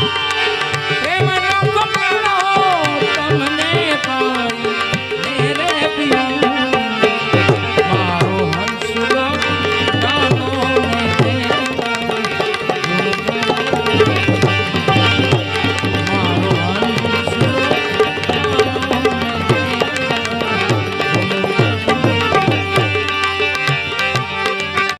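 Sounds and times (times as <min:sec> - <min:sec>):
bending melody line: 0:00.0 - 0:24.9
tabla rhythm: 0:00.0 - 0:24.9.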